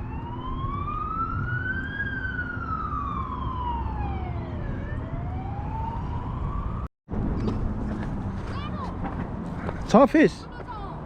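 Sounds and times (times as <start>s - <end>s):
siren wailing: 0.0s - 6.9s.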